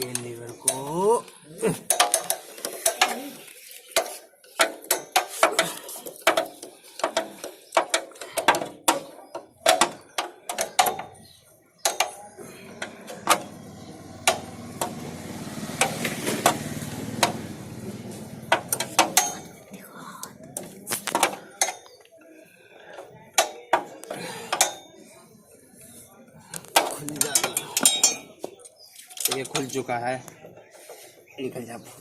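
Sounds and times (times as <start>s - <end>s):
metal tools clicking on parts: 26.6s - 29.8s.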